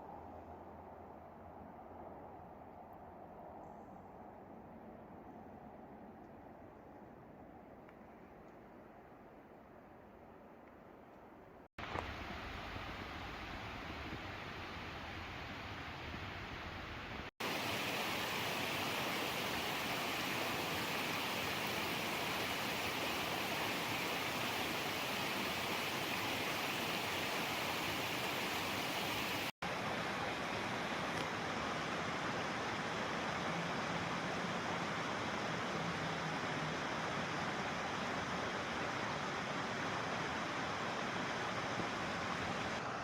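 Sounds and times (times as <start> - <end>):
steady rushing outdoor noise: 11.7 - 43.0.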